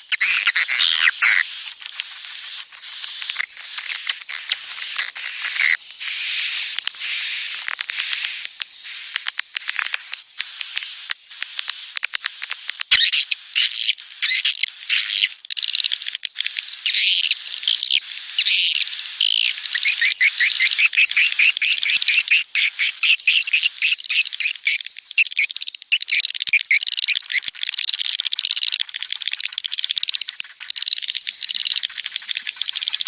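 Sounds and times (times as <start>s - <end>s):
swiftlets twittering: 0.0s - 13.4s
click: 7.6s - 13.0s.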